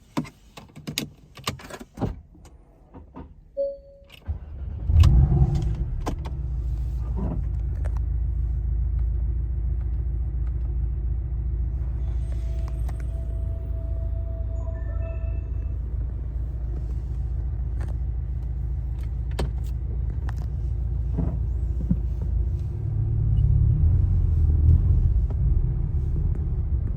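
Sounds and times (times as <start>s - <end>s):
car engine starting and idling: 0.4s - 26.9s
short beep: 3.6s - 4.2s, 12.0s - 16.3s.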